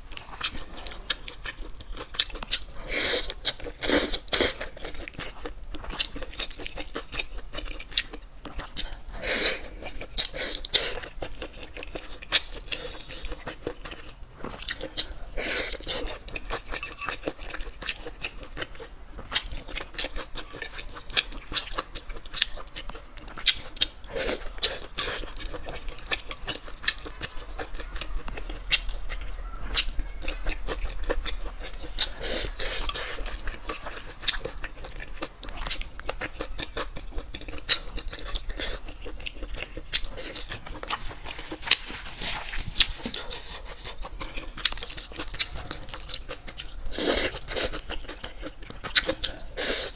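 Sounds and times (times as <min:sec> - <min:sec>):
chewing and crunching: 0:00.0 - 0:49.9
utensils clinking against dishes: 0:16.7 - 0:17.3.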